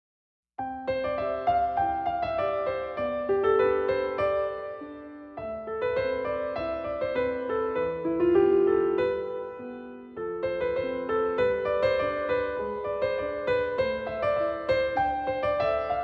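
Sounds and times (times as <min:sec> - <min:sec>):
gentle piano melody: 0:00.6 - 0:16.0.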